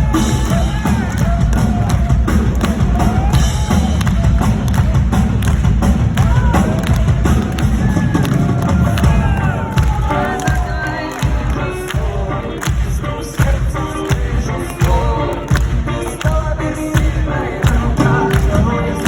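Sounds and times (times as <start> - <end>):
song with heavy bass drum beat: 0.0 - 19.0
voices singing: 6.2 - 19.0.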